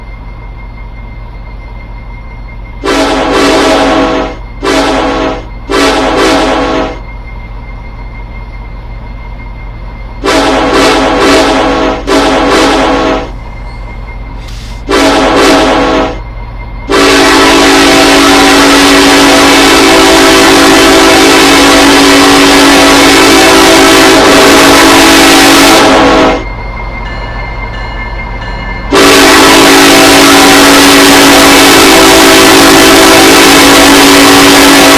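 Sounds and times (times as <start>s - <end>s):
locomotive air horn blasts: 2.8s - 7.0s, 10.2s - 13.6s, 14.4s - 16.2s, 16.9s - 26.4s, 28.9s - 34.9s.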